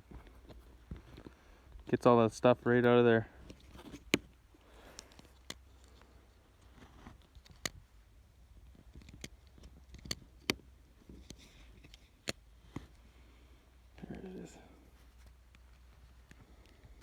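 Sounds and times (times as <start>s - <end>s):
sharp plastic clicks: 7.2s - 7.8s, 8.7s - 13.0s.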